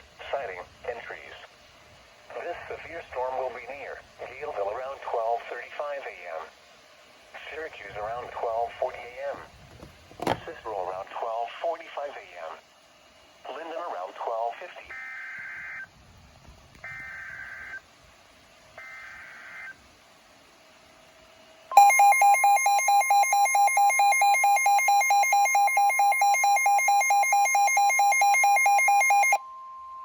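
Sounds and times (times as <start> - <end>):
screeching digital data bursts: 21.7 - 29.4
steady alert tone: 21.7 - 29.4
rapidly pulsing alarm beep: 21.7 - 30.0.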